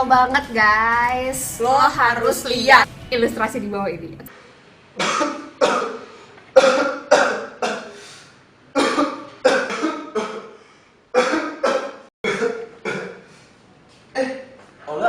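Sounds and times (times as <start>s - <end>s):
person coughing: 5.0s - 8.0s, 8.8s - 10.6s, 11.2s - 13.3s, 14.2s - 14.5s.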